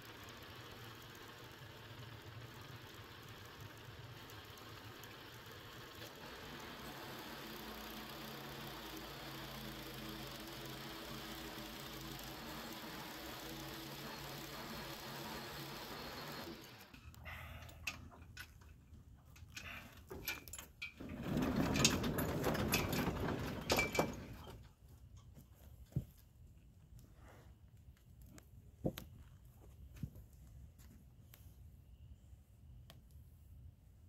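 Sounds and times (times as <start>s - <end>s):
small petrol engine running: 0.0s - 18.1s.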